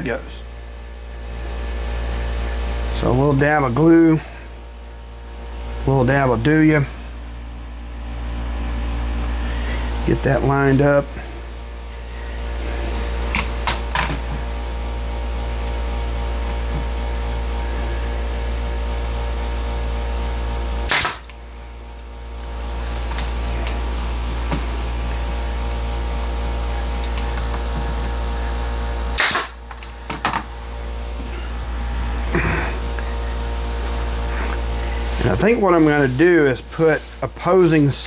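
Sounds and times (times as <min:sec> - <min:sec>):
steady machine hum: 0:00.0 - 0:38.0
nail gun firing: 0:20.9 - 0:21.4, 0:29.2 - 0:30.4.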